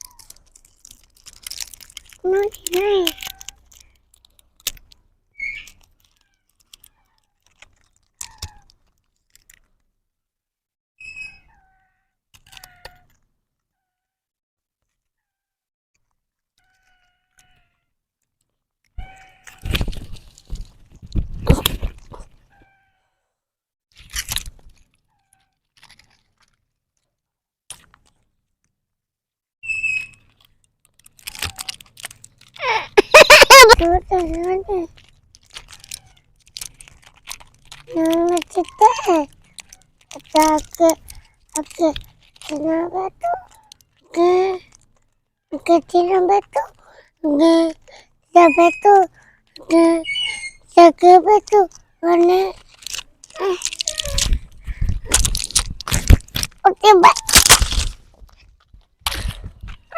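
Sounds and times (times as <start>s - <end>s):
parrot clicking and crunching: 0.0s - 9.9s, 12.4s - 13.3s, 23.9s - 27.1s, 27.7s - 28.3s, 29.6s - 46.8s, 49.1s - 59.9s
young parrots chirping: 5.4s - 5.8s, 50.0s - 50.7s.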